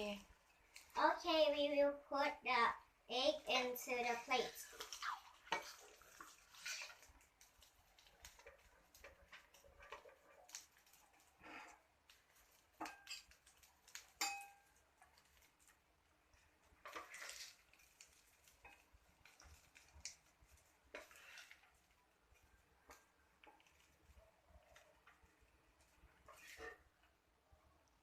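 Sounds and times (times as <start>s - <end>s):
utensil clinking on pan and plate: 12.8s - 14.8s.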